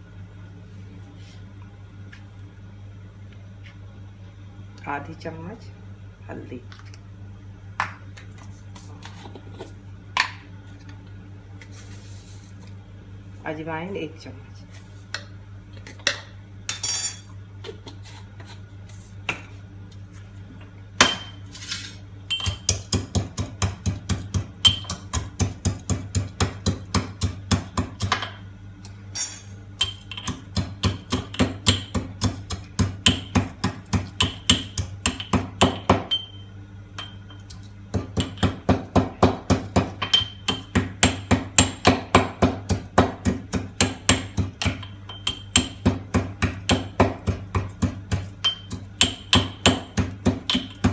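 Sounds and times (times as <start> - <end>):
pestle pounding spices in mortar: 22.3 - 28.3, 29.8 - 36.2, 37.9 - 50.9.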